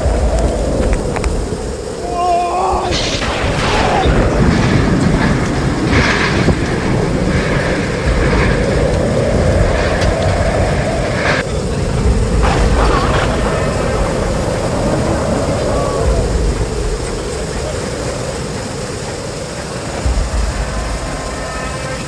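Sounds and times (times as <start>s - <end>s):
thunder rumbling: 0.0s - 22.0s
person's voice: 2.0s - 5.6s.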